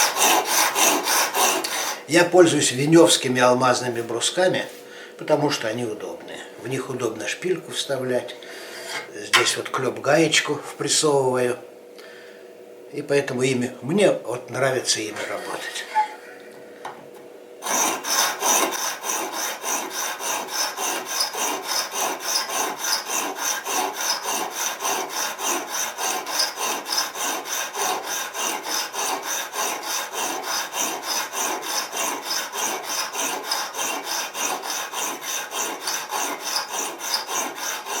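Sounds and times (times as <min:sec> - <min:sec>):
sharpening stone rubbing on blade: 0:31.8 - 0:37.9.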